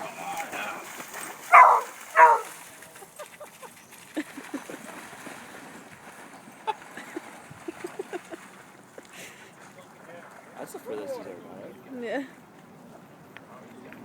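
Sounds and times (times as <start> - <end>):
dog barking: 1.5 - 2.6.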